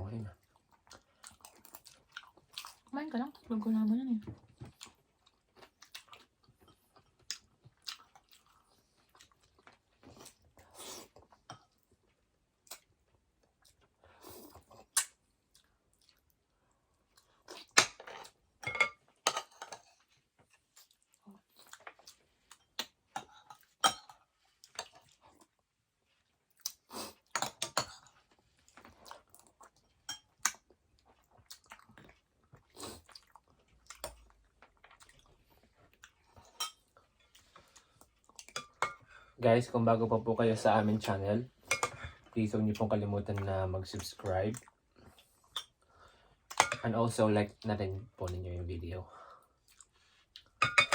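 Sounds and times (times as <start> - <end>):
chewing and mouth sounds: 0.4 - 3.4, 4.4 - 18.4, 19.7 - 23.8, 24.4 - 38.9, 44.1 - 45.8, 49.5 - 50.6.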